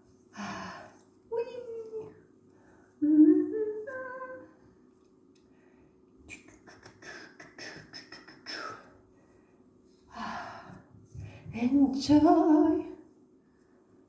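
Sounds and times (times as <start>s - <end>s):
woman humming: 3.0s - 4.6s.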